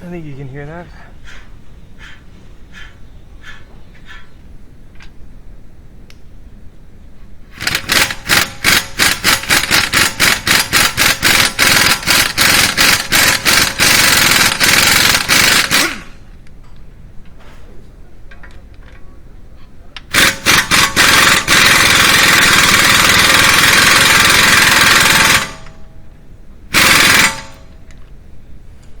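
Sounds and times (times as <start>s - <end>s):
impact wrench hammering: 7.6s - 16.1s, 20.1s - 25.7s, 26.8s - 27.7s.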